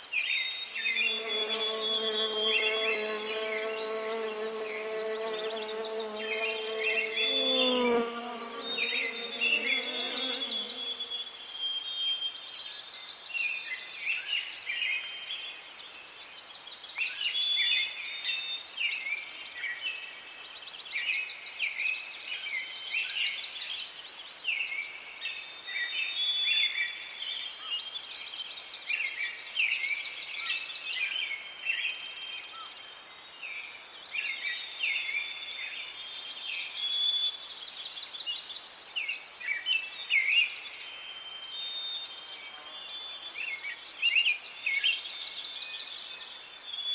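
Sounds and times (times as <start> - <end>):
songbirds singing: 0.4 - 11.2.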